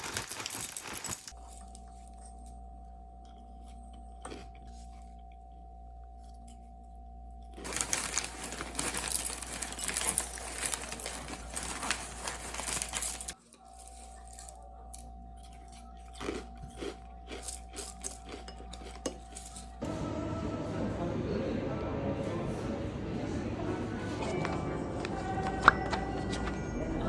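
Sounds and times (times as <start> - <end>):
steady low hum: 1.4 - 9.8
crackling rustle: 7.6 - 14.7
background music: 19.3 - 27.0.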